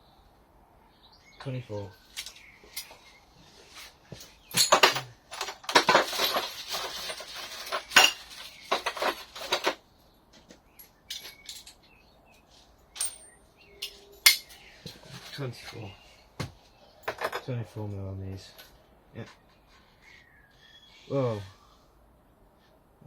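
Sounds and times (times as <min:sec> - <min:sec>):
metal tools clinking and rattling: 0:01.4 - 0:03.1, 0:04.1 - 0:09.8, 0:10.7 - 0:11.9, 0:12.9 - 0:15.9, 0:17.0 - 0:17.5.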